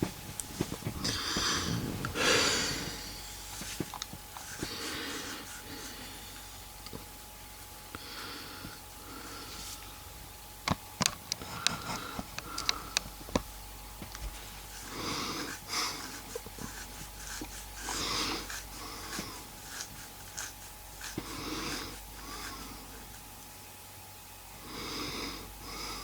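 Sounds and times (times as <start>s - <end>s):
person breathing wheezily: 0.6s - 6.5s, 7.9s - 9.8s, 14.4s - 23.3s, 24.6s - 26.0s.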